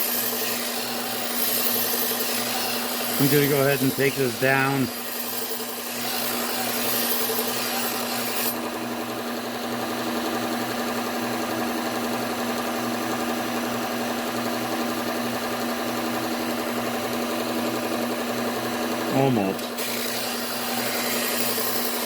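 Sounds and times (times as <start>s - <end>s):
knife grinding on belt: 0.0s - 8.6s, 19.6s - 22.0s
belt sander motor hum: 0.0s - 22.0s.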